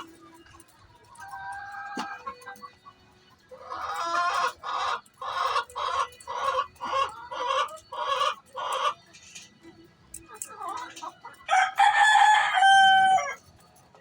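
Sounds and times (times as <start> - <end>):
hen cackling and squawking: 3.5 - 9.0, 10.5 - 13.4.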